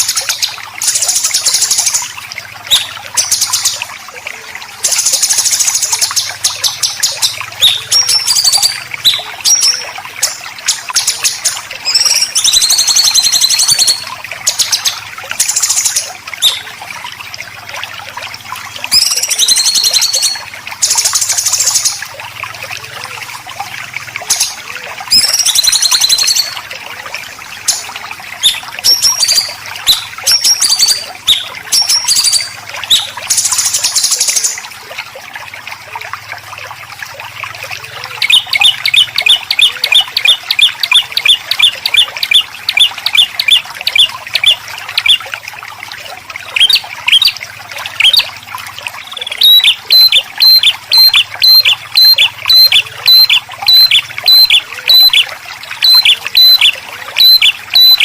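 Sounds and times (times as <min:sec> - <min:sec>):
water trickling: 0:00.0 - 0:58.0
songbird singing sharp notes: 0:49.0 - 0:58.0.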